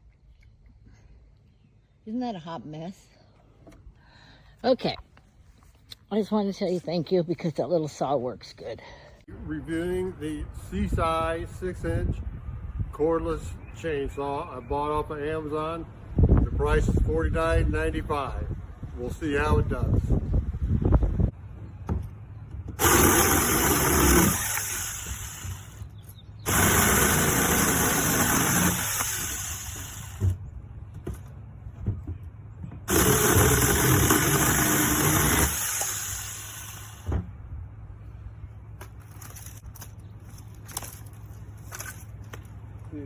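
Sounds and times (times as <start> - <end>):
mini chainsaw cutting wood: 22.8 - 25.8, 26.4 - 30.4, 32.9 - 37.1.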